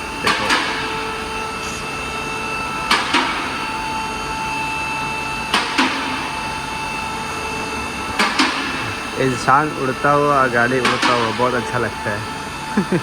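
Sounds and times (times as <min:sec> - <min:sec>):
vehicle lift motor whining: 0:00.0 - 0:13.0
sharp metallic clicks: 0:10.8 - 0:11.7.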